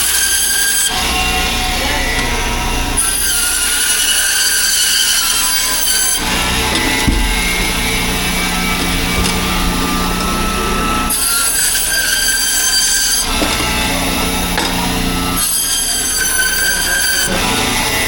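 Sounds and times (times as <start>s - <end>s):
saw screeching through fish: 0.0s - 18.0s
steady low hum: 6.2s - 11.1s.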